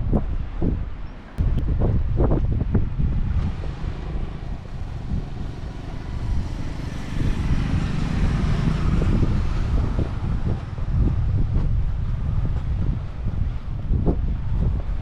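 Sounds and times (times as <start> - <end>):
broad rush of noise: 0.0 - 15.0
wind buffeting microphone: 0.0 - 15.0.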